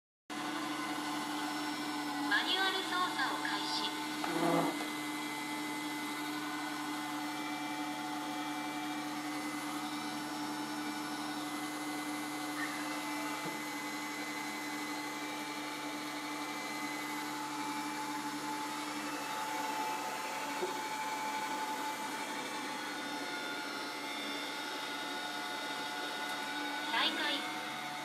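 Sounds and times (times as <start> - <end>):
robot vacuum motor humming: 0.4 - 28.0
whining tones: 2.4 - 5.4.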